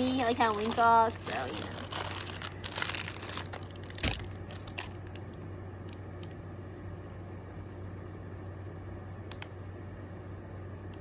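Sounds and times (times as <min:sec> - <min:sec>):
packaging rustling and crinkling: 0:00.0 - 0:06.3
steady low hum: 0:00.0 - 0:11.0.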